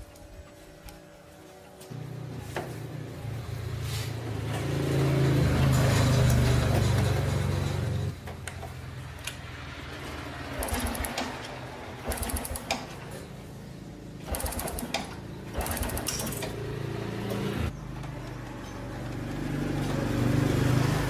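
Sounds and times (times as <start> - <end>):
small motorised tool rattling: 10.5 - 13.2, 14.3 - 16.6.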